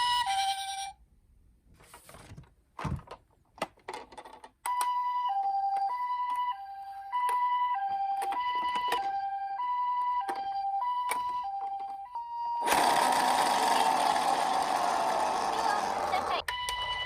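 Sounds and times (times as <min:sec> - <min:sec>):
toy two-tone siren: 0:00.0 - 0:01.0, 0:04.7 - 0:17.0.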